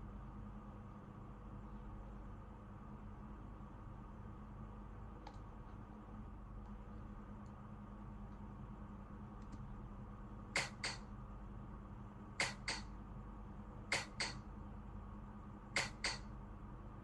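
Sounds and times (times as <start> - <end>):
low steady hum: 0.0 - 17.0
sharp double clicks: 10.6 - 11.0, 12.4 - 12.9, 13.9 - 14.4, 15.8 - 16.2.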